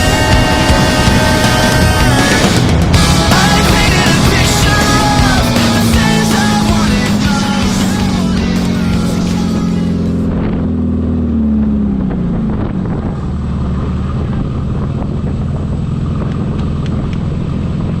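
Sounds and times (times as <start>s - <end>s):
rock music: 0.0s - 10.8s
engine running: 0.0s - 18.0s.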